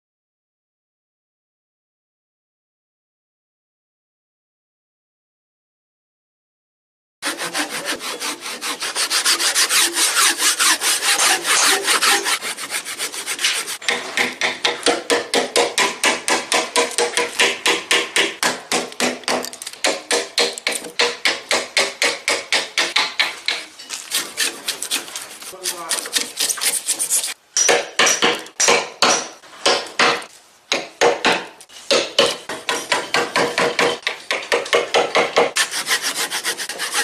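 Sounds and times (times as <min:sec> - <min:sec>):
hand tool scraping wood: 0:07.2 - 0:15.2, 0:22.8 - 0:27.4, 0:35.4 - 0:37.0.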